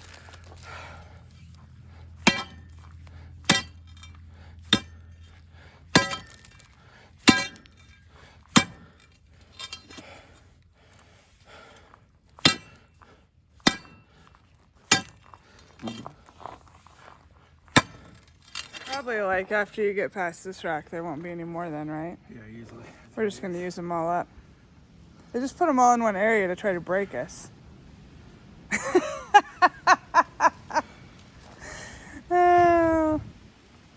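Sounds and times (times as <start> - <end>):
low steady hum: 0.0 - 33.9
steel tool striking rock: 1.3 - 10.3, 12.4 - 16.1, 17.6 - 19.2.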